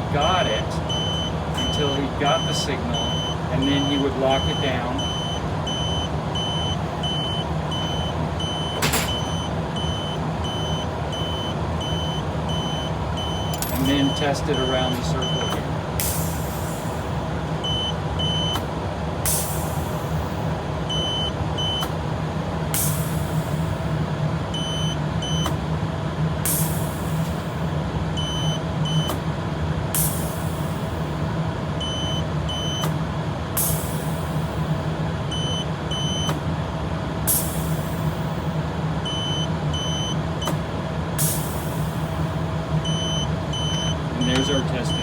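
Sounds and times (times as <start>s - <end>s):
low machine hum: 0.0s - 45.0s
continuity tester beeping: 0.2s - 16.2s, 17.6s - 18.6s, 20.9s - 22.0s, 24.6s - 25.6s, 28.2s - 29.2s, 31.8s - 32.9s, 35.3s - 36.4s, 39.0s - 40.6s, 41.2s - 45.0s.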